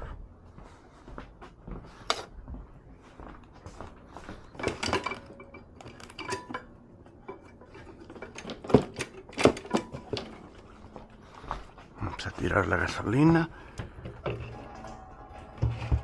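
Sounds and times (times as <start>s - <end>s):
tools clinking and knocking: 4.5s - 10.8s.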